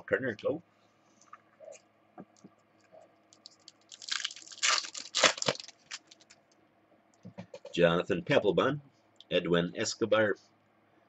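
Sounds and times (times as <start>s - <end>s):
foil wrapper crinkling and tearing: 3.3s - 6.4s.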